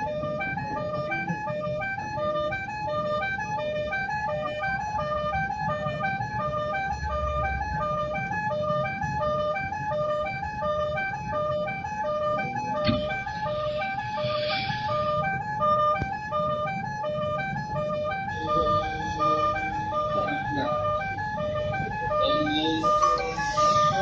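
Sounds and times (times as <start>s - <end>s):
bus air horn melody: 21.6s - 24.0s.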